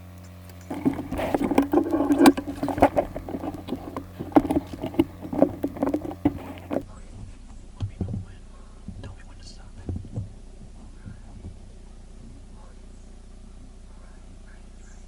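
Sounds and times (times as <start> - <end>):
clothing and gear rustling: 0.5 - 6.8.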